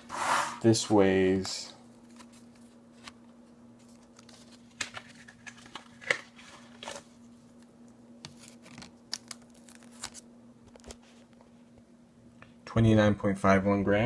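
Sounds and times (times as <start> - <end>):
foil wrapper crinkling: 8.3 - 10.2.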